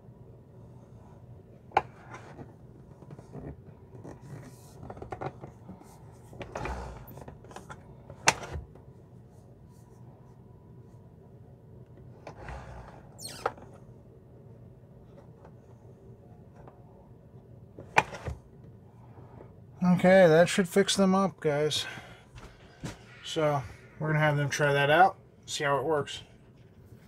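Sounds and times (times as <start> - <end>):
plastic parts rubbing and scraping: 1.8 - 8.6.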